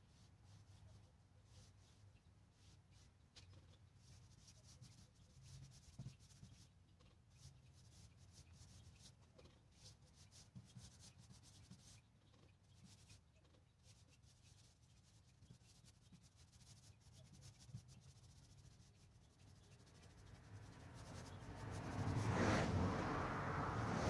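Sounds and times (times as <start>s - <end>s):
rubbing strokes on wood: 13.8s - 24.0s.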